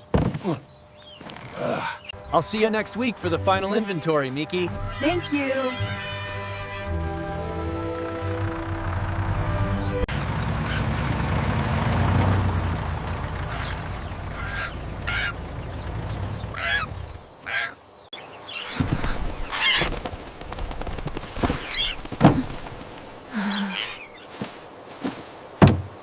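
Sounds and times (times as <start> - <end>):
bird squawks or honks: 3.3 - 11.0, 13.2 - 17.8
low rumbling background: 4.7 - 17.4.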